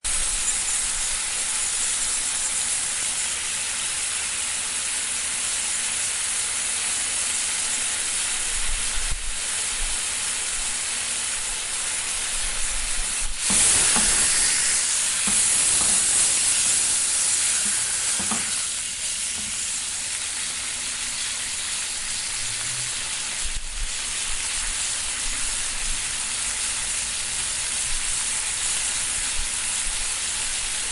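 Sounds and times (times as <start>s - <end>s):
steak sizzling in a frying pan: 0.1s - 30.9s.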